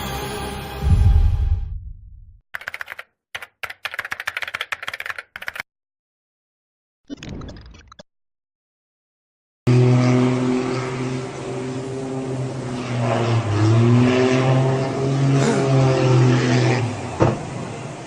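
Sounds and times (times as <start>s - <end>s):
light aircraft engine droning: 9.7s - 18.0s.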